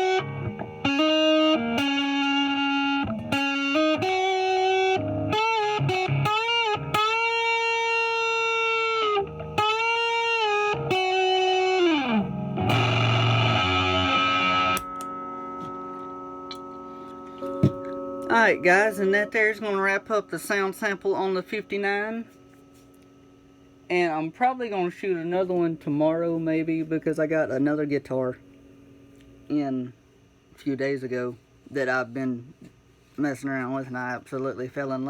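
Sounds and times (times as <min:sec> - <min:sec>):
fuzz electric guitar lead lines: 0:00.0 - 0:29.9
electric guitar chord ringing: 0:00.0 - 0:30.4.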